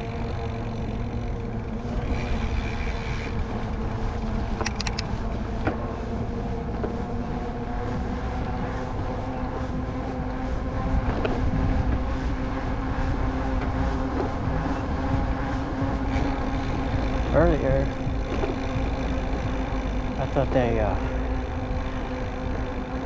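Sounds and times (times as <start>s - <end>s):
steady hum: 0.0s - 23.0s
wind and tyre rumble: 0.0s - 23.0s
sharp clicks: 4.6s - 5.1s.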